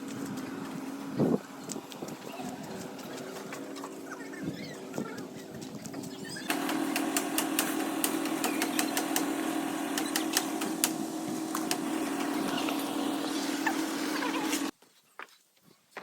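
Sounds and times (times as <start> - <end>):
sharp clicks and knocks: 5.8 - 12.8
small engine running: 6.2 - 14.7.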